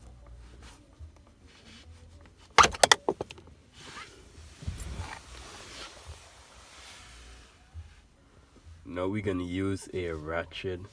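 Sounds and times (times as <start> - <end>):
plastic trim clicks and rattles: 2.6 - 3.4.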